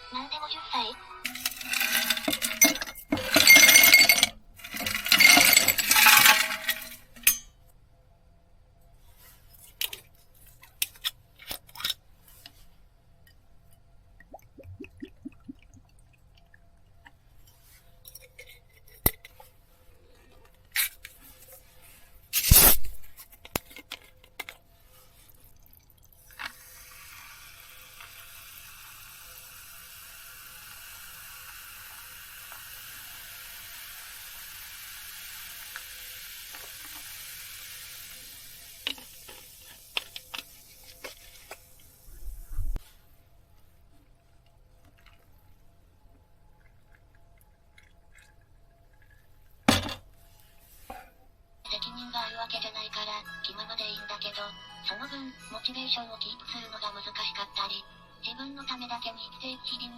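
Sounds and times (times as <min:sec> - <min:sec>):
dishes and utensils clinking: 0:01.3 - 0:07.5
faint steady hiss: 0:18.9 - 0:59.9.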